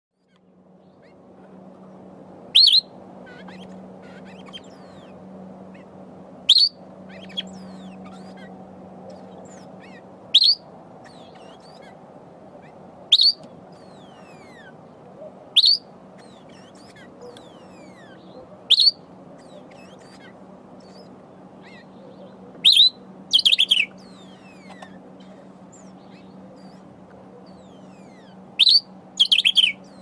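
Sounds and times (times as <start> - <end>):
bird sharp calls: 2.5 - 12.0, 12.6 - 30.0
faint descending bird whistles: 2.6 - 2.9.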